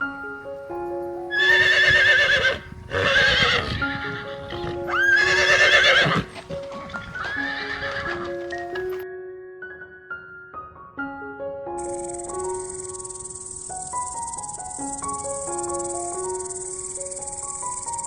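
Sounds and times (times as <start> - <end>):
soft piano music: 0.0 - 18.0
horse whinnying: 1.3 - 9.0.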